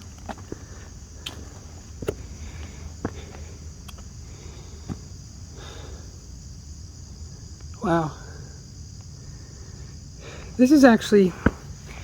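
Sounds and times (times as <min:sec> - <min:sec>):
footsteps on rock: 0:00.0 - 0:05.2, 0:11.3 - 0:12.0
insects chirring: 0:00.0 - 0:12.0.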